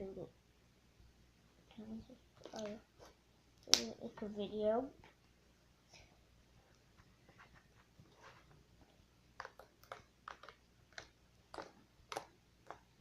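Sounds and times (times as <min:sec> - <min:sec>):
slime clicking and popping: 0:09.4 - 0:12.9.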